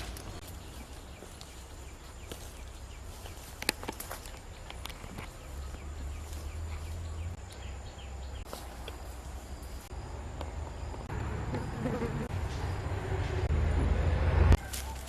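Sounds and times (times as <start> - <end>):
low rumble: 9.3 - 14.7
insect buzzing: 11.0 - 13.1.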